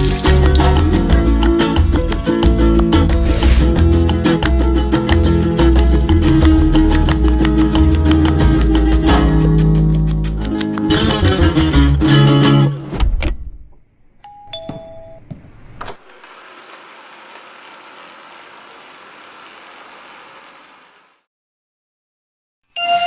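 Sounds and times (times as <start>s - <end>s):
acoustic guitar music: 0.2s - 12.8s.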